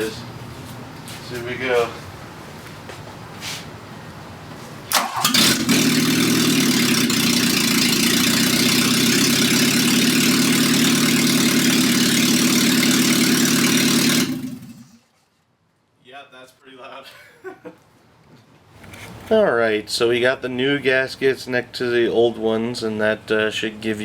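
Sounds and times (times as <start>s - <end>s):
car engine starting and running: 4.9s - 15.0s.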